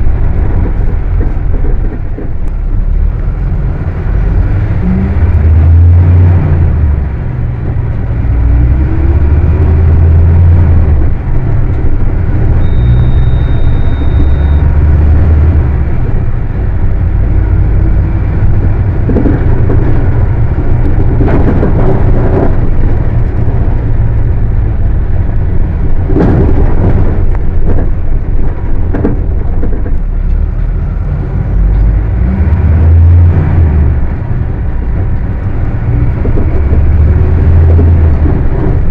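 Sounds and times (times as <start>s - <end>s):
diesel engine revving: 2.4s - 38.9s
knocks and rattles: 18.4s - 24.6s, 25.2s - 31.8s.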